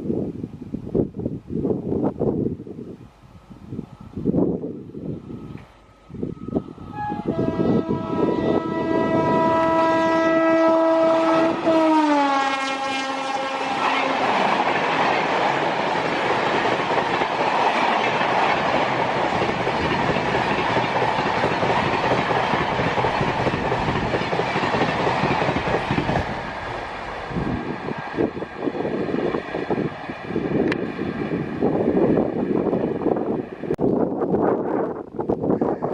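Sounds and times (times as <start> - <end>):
train horn: 5.8 - 14.5
train wheels clattering on rails: 13.8 - 31.4.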